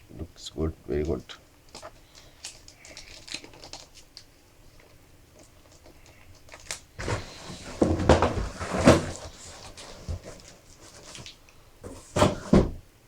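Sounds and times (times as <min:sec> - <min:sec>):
scraping rustling and knocks: 0:07.0 - 0:12.8.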